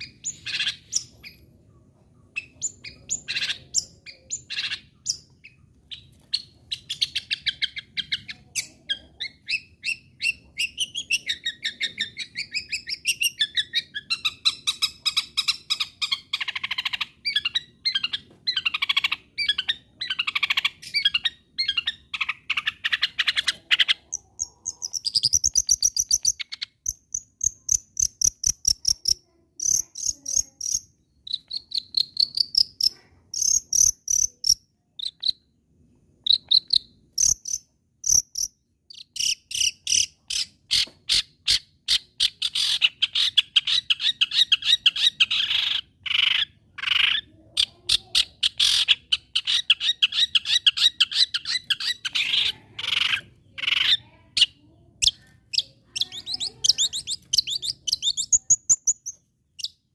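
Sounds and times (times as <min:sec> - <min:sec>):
bird singing: 0:00.0 - 0:35.5, 0:48.4 - 0:59.9
bird scratchy chatter: 0:18.1 - 0:35.2, 0:42.5 - 0:59.1.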